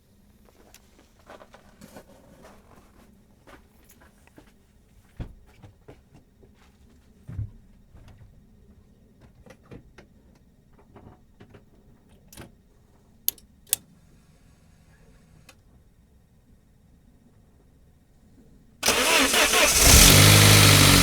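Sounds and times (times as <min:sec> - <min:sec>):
sharp clicks: 0:18.8 - 0:21.0.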